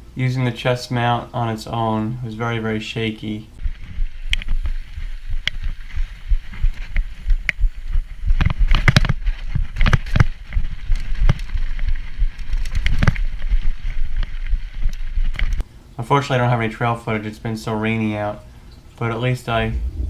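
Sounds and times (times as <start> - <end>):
bike knocks and rattles: 3.6 - 15.6
wind rumble on microphone: 3.6 - 15.6, 19.7 - 20.0.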